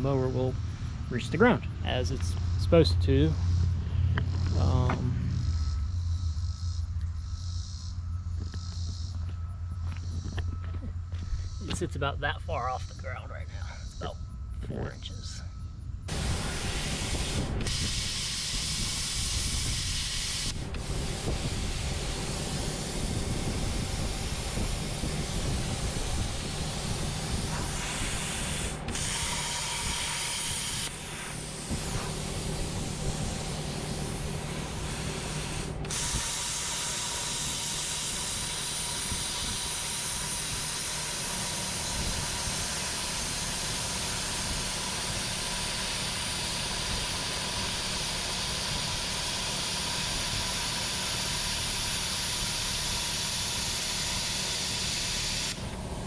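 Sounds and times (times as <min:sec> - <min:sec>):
loud metalworking hiss: 0:16.1 - 0:56.0.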